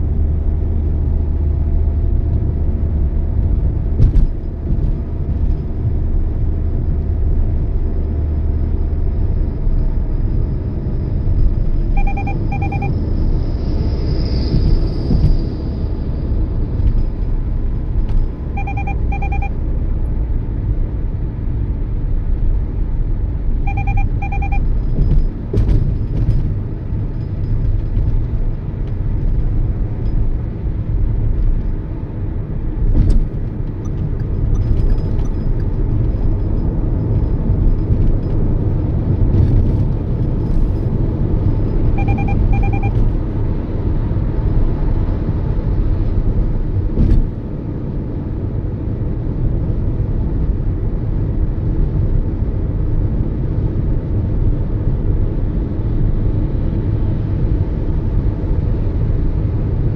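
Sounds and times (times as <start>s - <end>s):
car engine and road noise: 0.0s - 59.9s
short electronic beeps: 11.8s - 13.2s, 18.3s - 19.6s, 23.6s - 25.4s, 41.6s - 43.3s.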